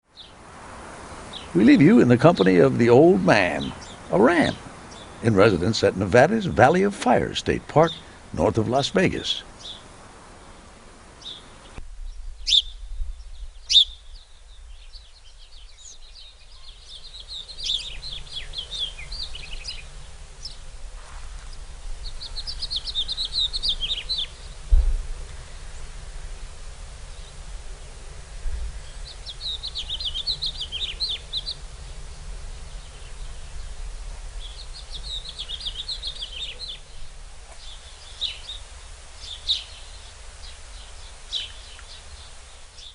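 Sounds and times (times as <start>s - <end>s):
small bird singing: 0.0s - 0.4s, 1.2s - 20.7s, 21.4s - 27.4s, 28.6s - 42.9s
low background noise: 0.0s - 42.9s
bird sharp calls: 1.0s - 11.8s, 12.4s - 26.5s, 28.5s - 42.9s
brief thump: 24.7s - 25.1s.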